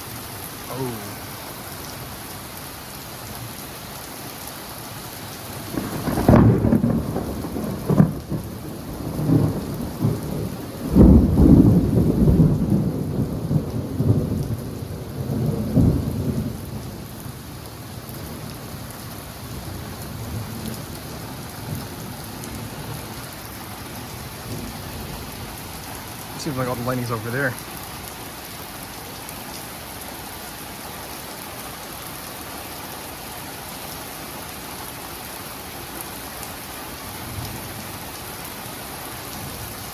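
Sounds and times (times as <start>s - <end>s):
steady rain: 0.0s - 39.9s
thunder peal: 5.8s - 8.5s
sharp thunder cracks: 5.8s - 14.3s.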